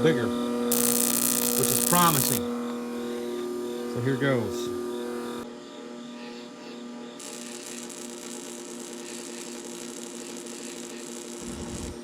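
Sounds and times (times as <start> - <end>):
gas hiss: 0.7 - 2.4
spark igniter snapping: 0.7 - 2.4.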